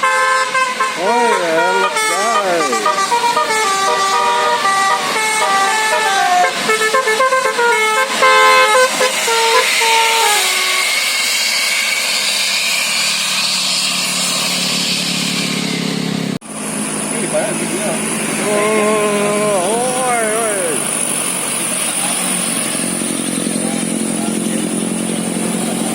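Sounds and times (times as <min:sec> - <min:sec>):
musical air horn melody: 0:00.0 - 0:11.3, 0:18.4 - 0:20.9
bus engine drone: 0:00.0 - 0:25.9
rushing hiss: 0:08.6 - 0:15.7.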